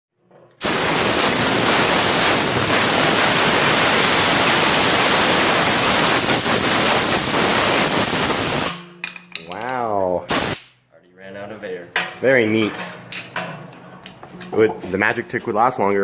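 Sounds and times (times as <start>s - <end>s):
compressed air hissing: 0.6s - 8.8s, 10.3s - 10.8s.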